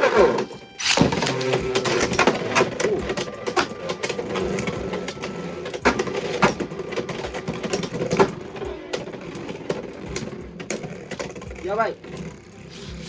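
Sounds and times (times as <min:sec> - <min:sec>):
spinning tops whirring: 0:00.0 - 0:13.0.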